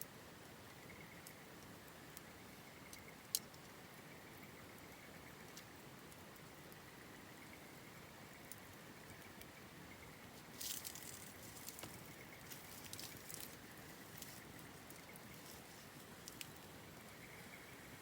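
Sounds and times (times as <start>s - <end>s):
campfire crackling and popping: 0.0s - 3.8s, 4.4s - 7.7s, 8.4s - 9.6s, 10.2s - 17.2s.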